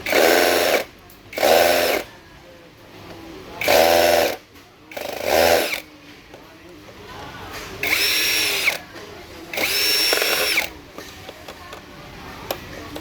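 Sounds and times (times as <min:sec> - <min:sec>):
power drill driving screws: 0:05.0 - 0:05.8, 0:07.8 - 0:08.8, 0:09.5 - 0:10.7.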